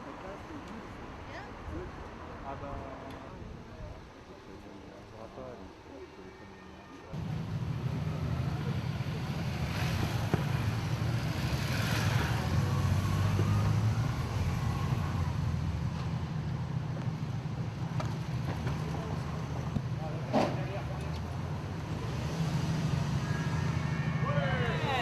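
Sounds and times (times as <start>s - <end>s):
street traffic noise: 0.0s - 25.0s
vehicle engine rumbling: 7.1s - 25.0s.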